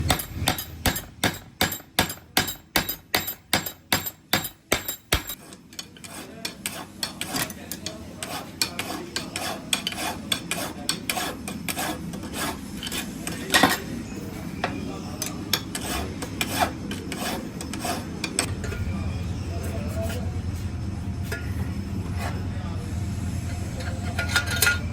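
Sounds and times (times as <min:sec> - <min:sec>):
hammer striking metal: 0:00.0 - 0:05.5
metal clinking and scraping: 0:00.0 - 0:14.0, 0:23.5 - 0:24.9.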